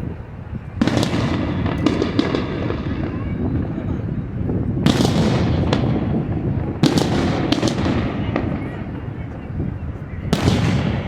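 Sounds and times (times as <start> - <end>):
fireworks cracking: 0.0 - 11.0
firework boom: 0.8 - 9.3, 10.2 - 11.0.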